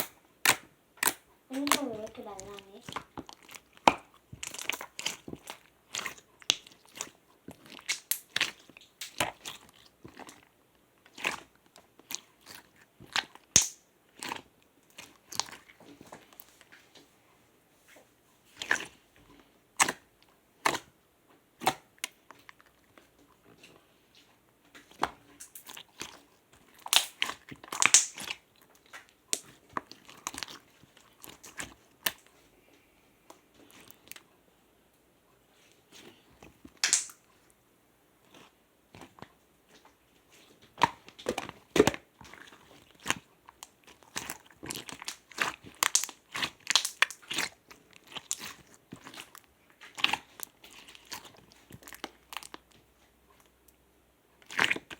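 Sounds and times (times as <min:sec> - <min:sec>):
slime squeezed sticky pops: 0:00.0 - 0:10.3, 0:12.5 - 0:14.4, 0:21.6 - 0:22.2, 0:26.8 - 0:29.6, 0:36.7 - 0:37.2, 0:44.1 - 0:49.3.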